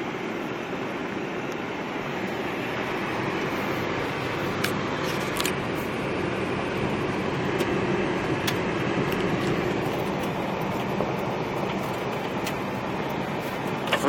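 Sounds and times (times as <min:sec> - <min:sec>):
vehicle engine and road noise: 0:00.0 - 0:14.0.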